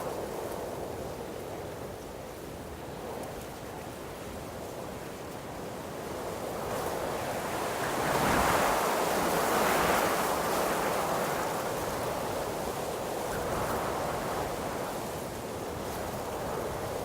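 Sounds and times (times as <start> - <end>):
wind rushing through trees: 6.1 - 17.0.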